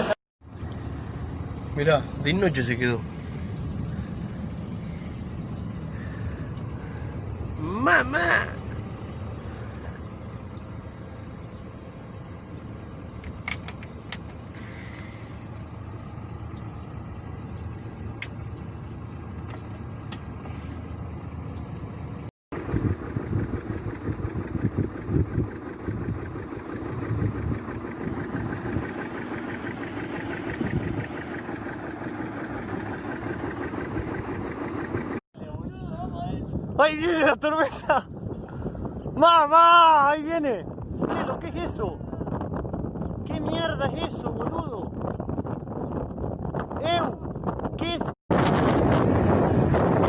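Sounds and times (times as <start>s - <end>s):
wind buffeting microphone: 22.6s - 50.0s.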